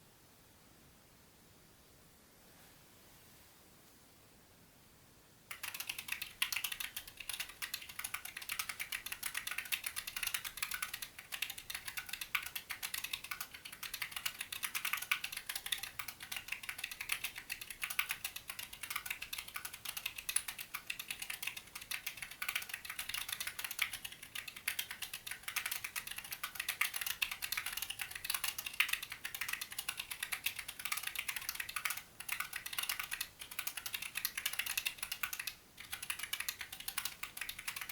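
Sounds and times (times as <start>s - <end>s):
mechanical keyboard typing: 5.5s - 37.9s.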